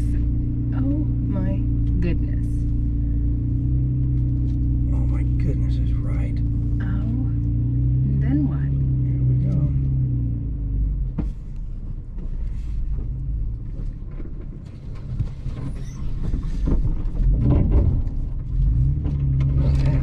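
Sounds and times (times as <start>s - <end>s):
engine rumble inside cabin: 0.0s - 20.0s
truck knocking and creaking: 11.1s - 20.0s.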